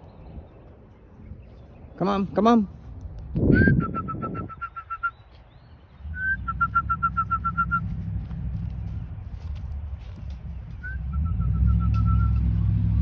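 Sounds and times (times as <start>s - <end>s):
person whistling: 3.5s - 5.2s, 6.2s - 7.9s, 10.8s - 12.4s
low steady rumble: 5.9s - 13.0s.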